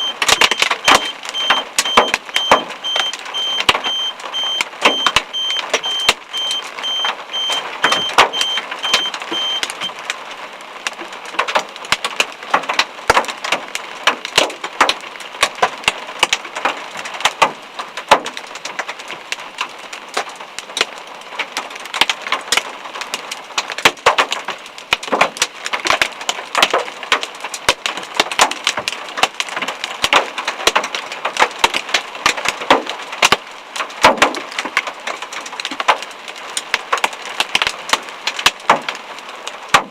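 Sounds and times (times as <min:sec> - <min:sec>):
hailstones striking hard surface: 0:00.1 - 0:39.9.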